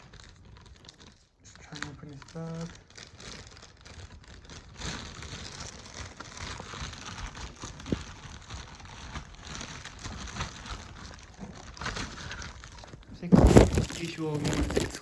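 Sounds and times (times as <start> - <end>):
plastic bag crinkling: 0.0 - 15.0.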